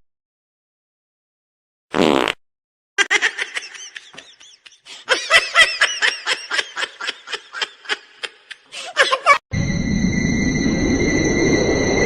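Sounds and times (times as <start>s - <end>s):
high laughing bursts: 3.0s - 9.4s.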